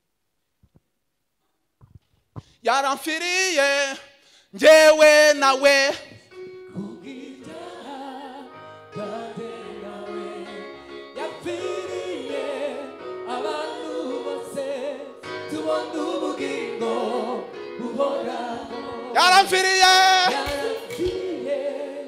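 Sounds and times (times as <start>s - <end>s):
gospel singing over held chords: 4.6s - 22.0s.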